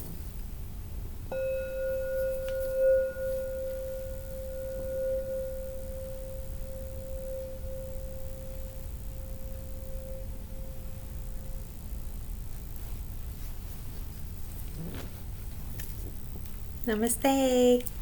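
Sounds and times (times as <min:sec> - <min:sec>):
struck ringing metal tone: 0:01.3 - 0:13.3.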